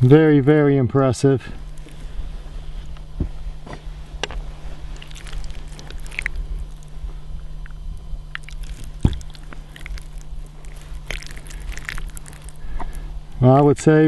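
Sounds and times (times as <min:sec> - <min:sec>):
wet squishing and crunching: 0:01.6 - 0:03.2, 0:04.2 - 0:13.4.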